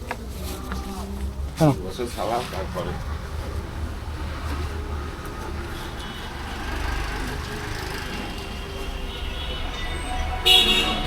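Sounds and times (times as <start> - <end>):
road traffic rumble: 0.0 - 11.0.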